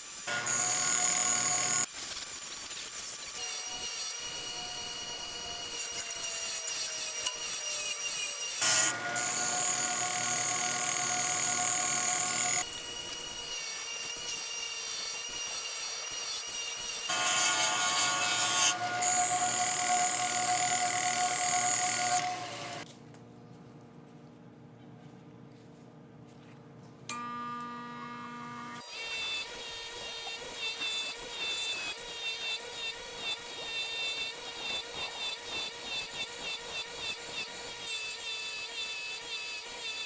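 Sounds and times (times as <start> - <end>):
power tool whining: 0.3 - 2.1, 3.3 - 22.9.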